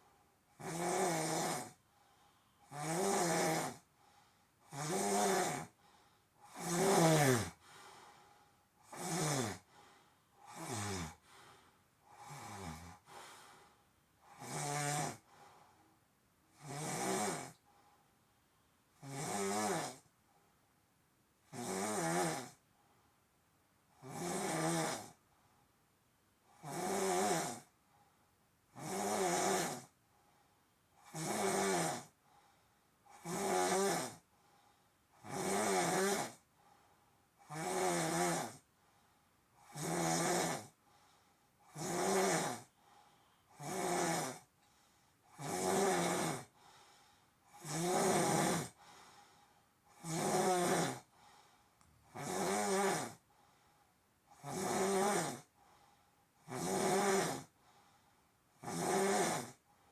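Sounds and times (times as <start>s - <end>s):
quiet breaths: 0.0s - 20.7s, 22.3s - 24.0s, 26.4s - 59.9s
person snoring: 0.6s - 1.8s, 2.6s - 3.9s, 4.6s - 5.8s, 6.4s - 7.6s, 8.8s - 9.7s, 10.4s - 11.3s, 12.1s - 13.2s, 14.3s - 15.3s, 16.6s - 17.6s, 19.0s - 20.0s, 21.5s - 22.6s, 24.0s - 25.2s, 26.6s - 27.7s, 28.8s - 29.9s, 31.0s - 32.2s, 33.1s - 34.2s, 35.2s - 36.4s, 37.4s - 38.6s, 39.6s - 40.8s, 41.6s - 42.7s, 43.5s - 44.5s, 45.3s - 46.6s, 47.5s - 48.9s, 49.9s - 51.1s, 52.1s - 53.2s, 54.3s - 55.5s, 56.4s - 57.5s, 58.6s - 59.6s.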